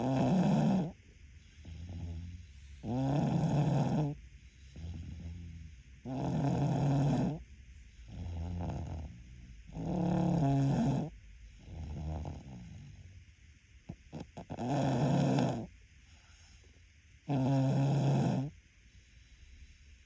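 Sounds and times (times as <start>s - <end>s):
person snoring: 0.0s - 1.0s, 1.6s - 7.4s, 8.0s - 13.0s, 14.1s - 15.7s, 17.3s - 18.5s
soft breath: 1.2s - 3.0s, 4.0s - 6.0s, 15.9s - 17.0s, 18.1s - 20.0s.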